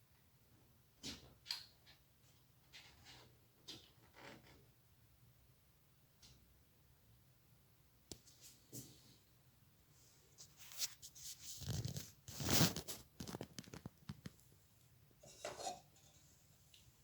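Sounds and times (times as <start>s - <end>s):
rustling: 10.3s - 14.5s.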